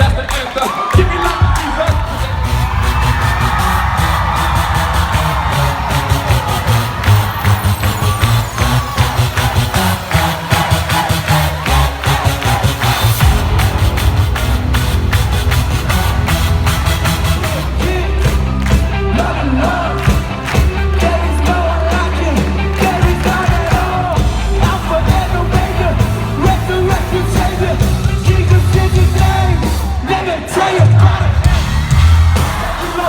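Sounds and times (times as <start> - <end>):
crowd yelling and cheering: 0.0 - 33.0
live band playing: 1.0 - 30.4
person singing: 17.4 - 33.0.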